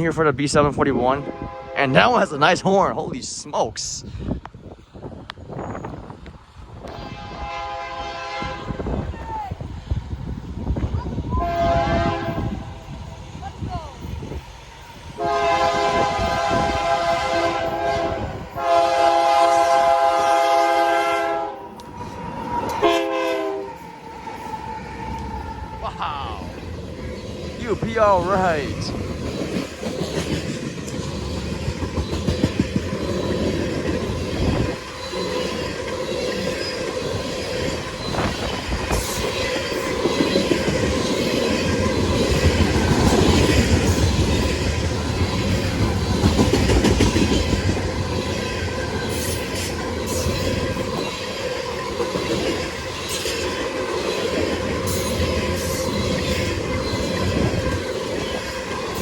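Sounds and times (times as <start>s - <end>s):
freight train rumbling past: 0.0s - 59.0s
wheels clacking over rail joints: 26.7s - 59.0s.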